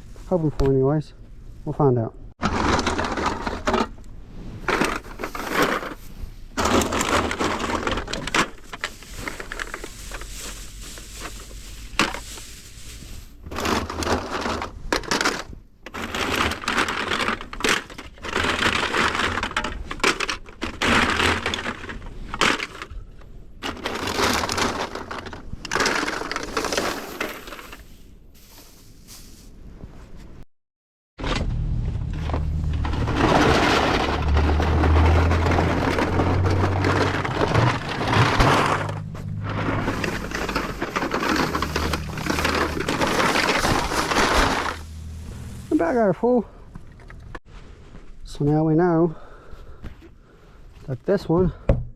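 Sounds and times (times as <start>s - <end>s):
aluminum cans clattering: 32.7s - 45.0s.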